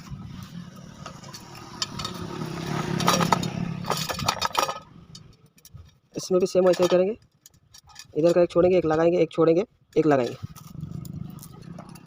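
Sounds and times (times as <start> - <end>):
engine hum: 0.0 - 6.2, 10.4 - 12.0
wheel spokes clinking: 0.4 - 9.2.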